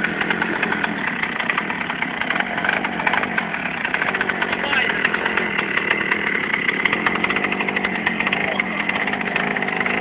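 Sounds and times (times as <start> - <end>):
chainsaw engine running: 0.0 - 10.0.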